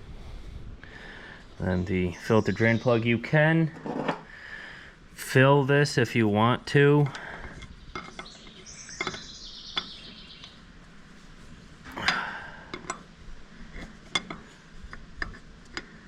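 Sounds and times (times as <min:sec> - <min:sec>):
metal tools clinking: 0:07.1 - 0:10.2.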